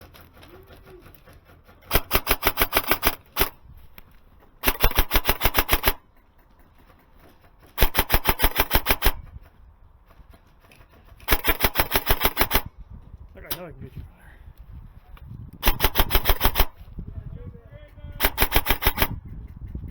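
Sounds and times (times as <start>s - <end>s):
airsoft gun shots: 1.9s - 3.6s, 4.6s - 6.0s, 7.8s - 9.2s, 11.3s - 12.7s, 15.6s - 16.8s, 18.2s - 19.2s.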